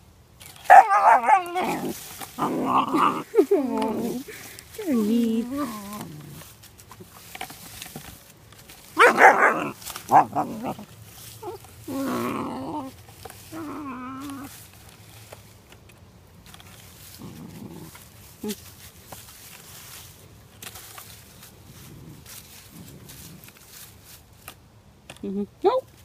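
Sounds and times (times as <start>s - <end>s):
puppy barking: 0.7s - 1.8s, 9.0s - 10.8s.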